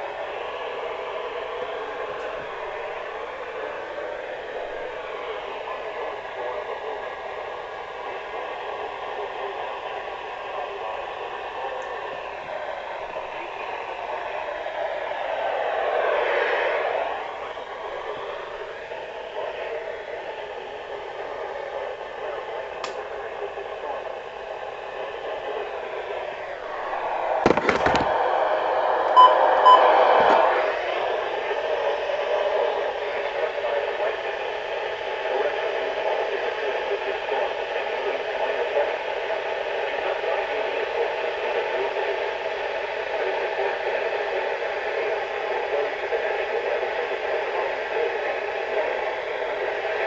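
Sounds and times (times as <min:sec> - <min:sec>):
radio static hiss: 0:17.2 - 0:50.0
short high beeps: 0:29.2 - 0:30.0.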